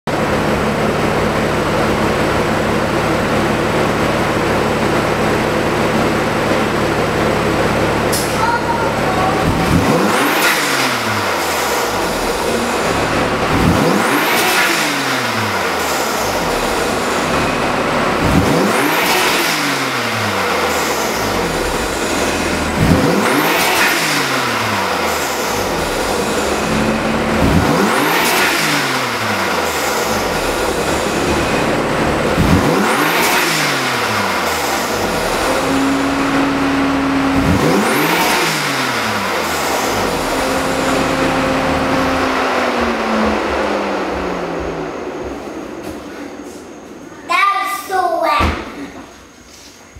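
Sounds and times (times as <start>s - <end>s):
car engine revving: 0.0s - 47.2s.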